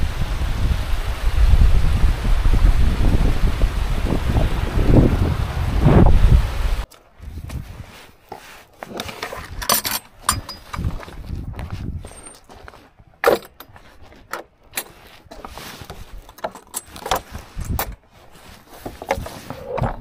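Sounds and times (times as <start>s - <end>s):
low microphone rumble: 0.0s - 7.9s
footsteps on stony path: 6.8s - 20.0s
kit clinking: 9.0s - 10.9s, 16.2s - 18.0s.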